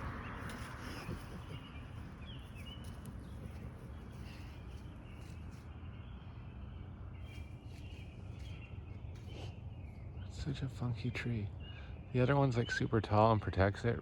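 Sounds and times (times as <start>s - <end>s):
steady low rumble: 0.0s - 7.6s.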